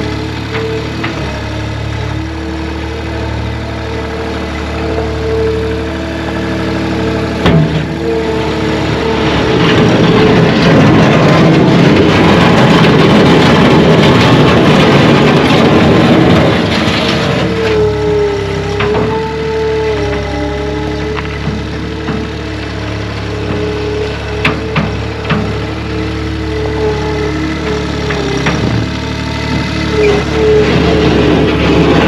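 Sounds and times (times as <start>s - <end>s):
small engine running: 0.0s - 32.0s
two-stroke chainsaw cutting: 0.0s - 32.0s.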